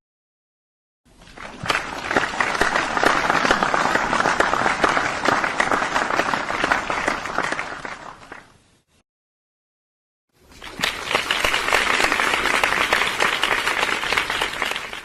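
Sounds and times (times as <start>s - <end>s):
audience applauding: 1.3s - 8.6s, 10.5s - 15.0s.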